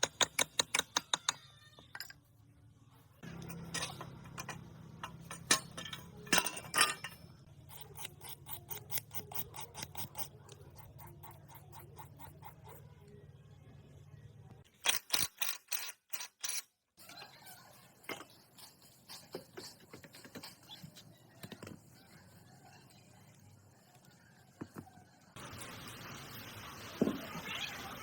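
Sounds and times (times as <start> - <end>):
ratchet-like mechanical clicking: 7.4 - 12.8.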